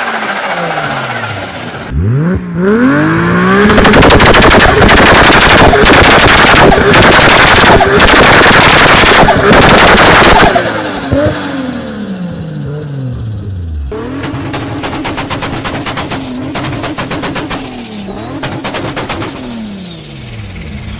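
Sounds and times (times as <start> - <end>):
car engine revving: 0.0 - 20.9
turbo and exhaust crackling: 3.4 - 11.4, 13.9 - 20.9.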